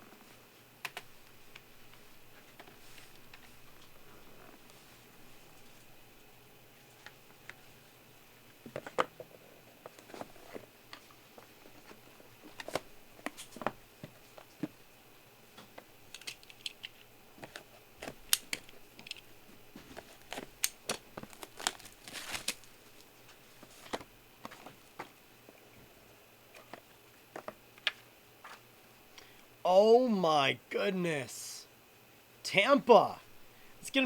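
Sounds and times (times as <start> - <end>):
packaging crinkling: 19.9 - 24.9
packaging tearing: 21.2 - 22.7.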